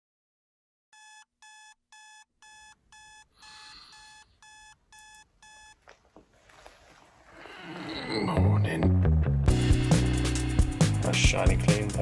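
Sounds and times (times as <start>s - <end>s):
electronic alarm beeping: 1.0s - 5.8s
short rustle: 5.9s - 7.4s.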